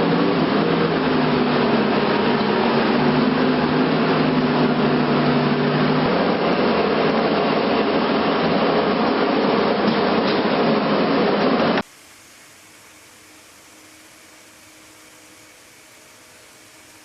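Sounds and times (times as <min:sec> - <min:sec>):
loud engine droning: 0:00.0 - 0:11.8.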